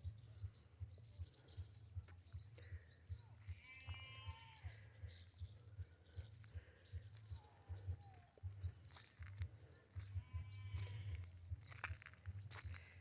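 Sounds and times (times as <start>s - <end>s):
farm animal bleating: 3.4s - 5.0s, 10.0s - 11.4s.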